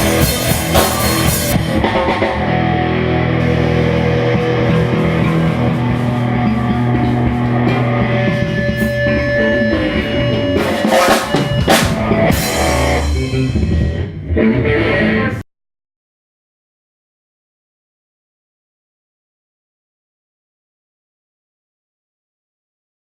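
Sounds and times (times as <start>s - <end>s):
live rock band playing: 0.0s - 15.4s.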